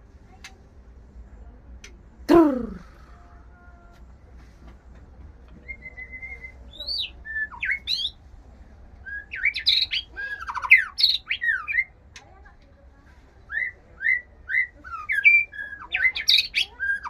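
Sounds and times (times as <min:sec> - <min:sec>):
songbird singing whistles: 0:05.6 - 0:08.2, 0:09.0 - 0:11.9, 0:13.5 - 0:17.0.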